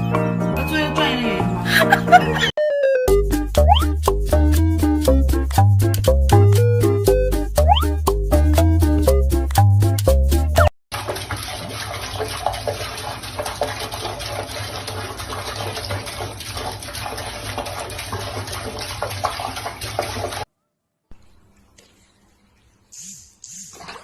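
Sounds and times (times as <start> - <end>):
water running: 10.5 - 20.5.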